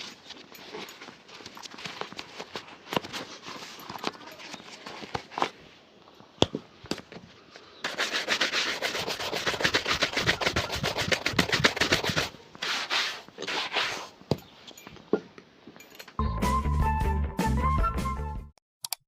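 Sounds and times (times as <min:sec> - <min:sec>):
shoe being buffed: 0:07.8 - 0:14.2.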